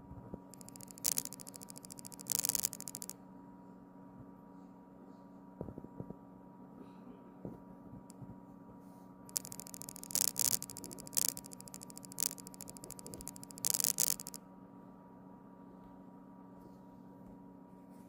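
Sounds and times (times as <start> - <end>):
faint steady hum: 0.0 - 18.0
camera module clicking rattle: 0.6 - 3.1, 9.3 - 14.4.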